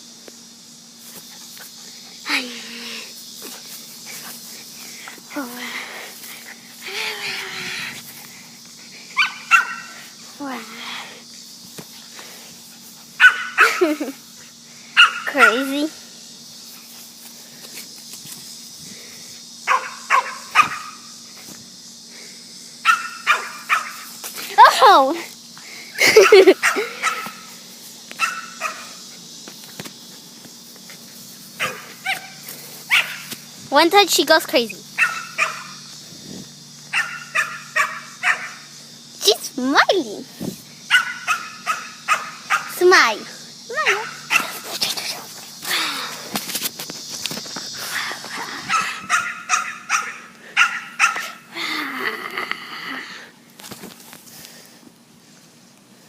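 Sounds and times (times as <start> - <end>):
dog barking and yipping: 9.2 - 10.0, 13.1 - 14.0, 15.0 - 15.7, 19.7 - 21.0, 22.8 - 24.1, 26.1 - 27.5, 28.2 - 29.0, 31.6 - 33.3, 35.0 - 35.8, 36.9 - 38.7, 40.9 - 42.8, 43.7 - 44.6, 48.6 - 51.4.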